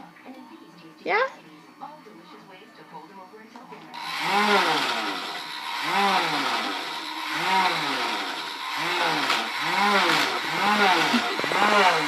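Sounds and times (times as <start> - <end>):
toy engine sound effect revving: 4.0 - 12.0.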